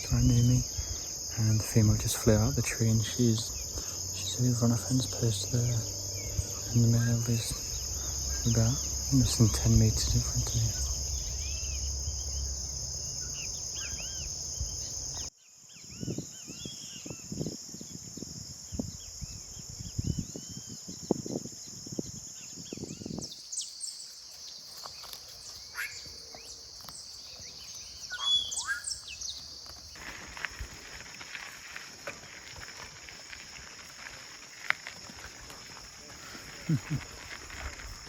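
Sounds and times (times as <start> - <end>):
high-pitched insect drone: 0.0 - 15.3
short bird chirps: 25.6 - 26.5, 27.9 - 29.4.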